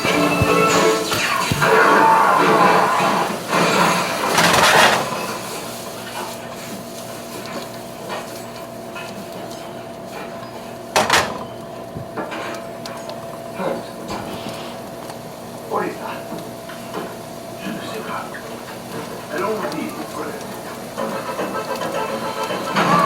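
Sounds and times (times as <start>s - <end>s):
dishes and cutlery clattering: 3.5s - 5.4s.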